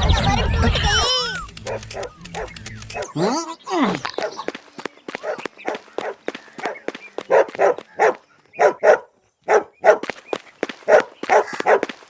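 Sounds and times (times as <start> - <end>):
dog barking: 6.0 - 10.1, 10.9 - 11.9.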